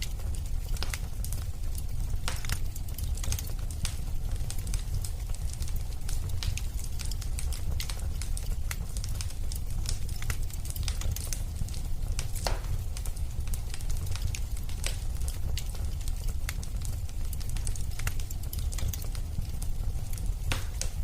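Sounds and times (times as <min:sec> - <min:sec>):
wood fire crackling and popping: 0:00.0 - 0:21.0.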